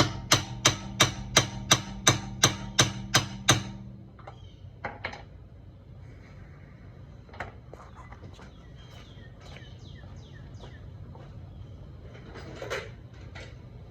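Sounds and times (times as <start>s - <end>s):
hammer striking steel socket: 0.0s - 4.3s.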